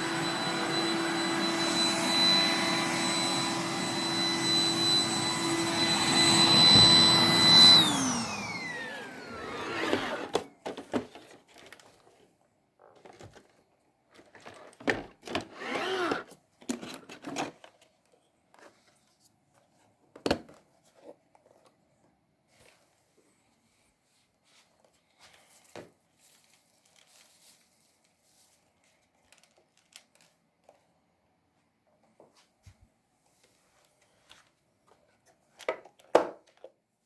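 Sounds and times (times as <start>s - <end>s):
robot vacuum whining: 0.0s - 10.5s, 15.3s - 16.3s.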